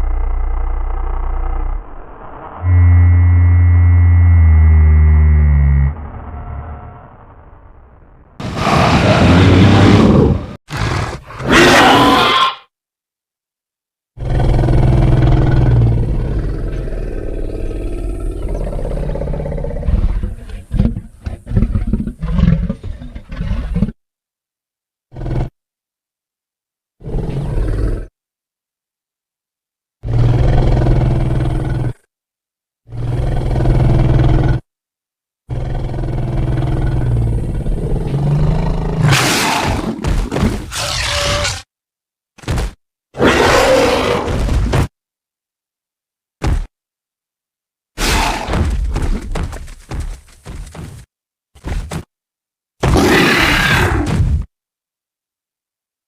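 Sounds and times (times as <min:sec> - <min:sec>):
deep dinosaur roar: 0:00.0 - 0:07.3, 0:14.2 - 0:23.9, 0:30.0 - 0:32.0, 0:32.9 - 0:34.7, 0:35.5 - 0:39.9, 0:43.2 - 0:44.3, 0:53.0 - 0:54.1.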